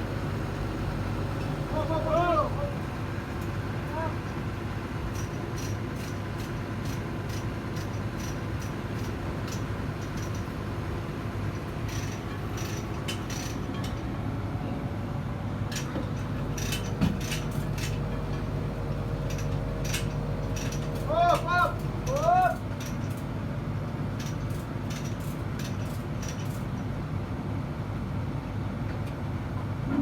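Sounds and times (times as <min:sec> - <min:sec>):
second steady hum: 0:00.0 - 0:02.8, 0:16.2 - 0:22.6
low machinery hum: 0:00.0 - 0:28.2.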